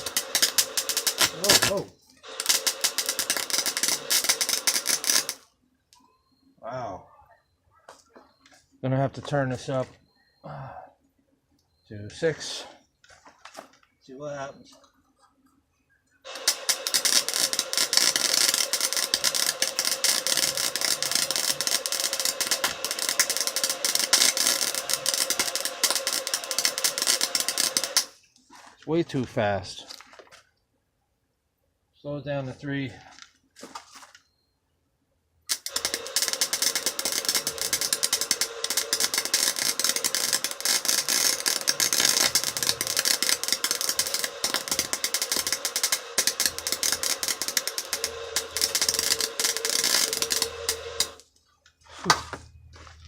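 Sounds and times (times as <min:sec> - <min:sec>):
welder hum: 0:00.0 - 0:05.5, 0:16.3 - 0:28.2, 0:35.5 - 0:51.2
welding arc crackling: 0:00.0 - 0:05.5, 0:16.3 - 0:28.2, 0:35.5 - 0:51.2.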